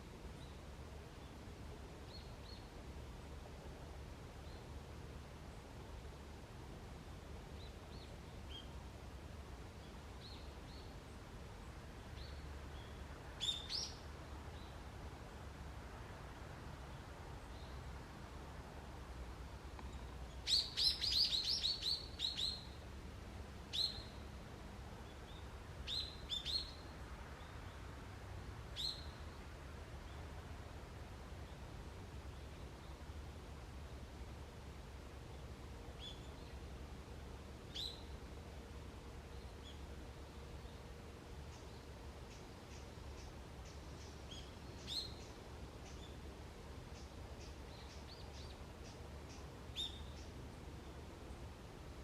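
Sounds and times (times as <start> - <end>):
low rumble of background noise: 0.0 - 52.0
bird chirping: 12.2 - 14.0, 19.9 - 22.8, 41.5 - 46.2, 46.9 - 50.3.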